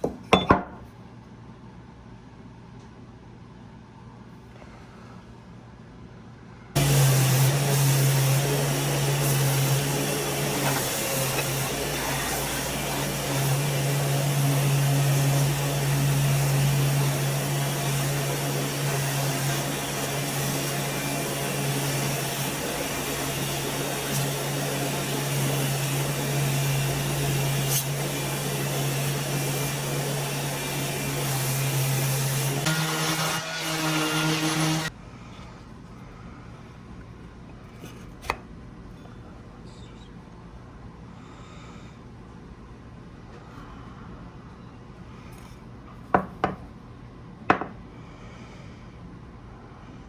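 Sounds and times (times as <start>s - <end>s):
electric power tool running: 6.8s - 34.9s.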